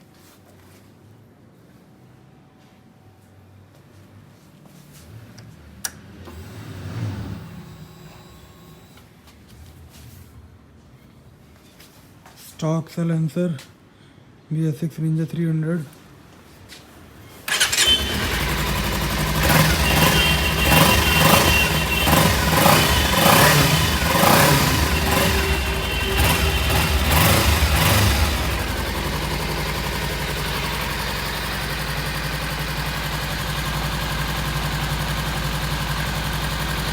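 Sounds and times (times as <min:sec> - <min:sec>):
motorcycle engine revving and idling: 0:05.6 - 0:09.0, 0:17.5 - 0:36.9.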